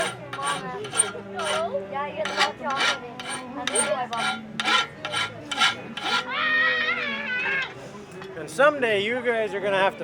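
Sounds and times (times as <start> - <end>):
file rasping on metal: 0.0 - 6.4.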